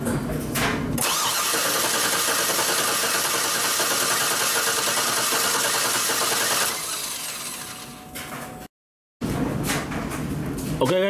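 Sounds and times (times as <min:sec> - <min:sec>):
engine cranking without firing: 0:01.0 - 0:07.9.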